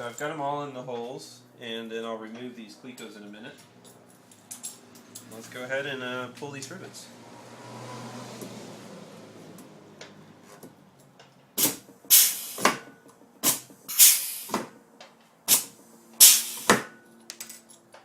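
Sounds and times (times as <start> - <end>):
rivet gun air hissing bursts: 11.6 - 12.8, 13.4 - 14.6, 15.5 - 16.9.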